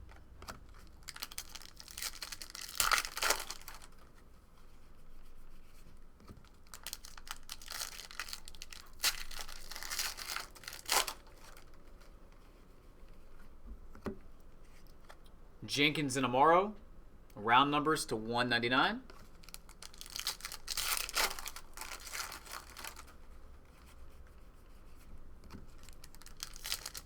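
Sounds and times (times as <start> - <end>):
card pack wrappers rustling: 0.6 - 4.0, 6.4 - 12.1, 19.1 - 23.2, 25.7 - 27.0
wrapper tearing: 0.6 - 4.0, 6.4 - 12.0, 19.2 - 23.2, 25.7 - 27.0.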